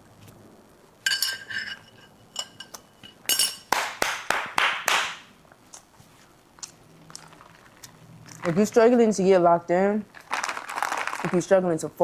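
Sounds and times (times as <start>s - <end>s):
utensil scraping dish: 1.1s - 3.2s
metal utensil ringing on dish: 1.1s - 3.7s.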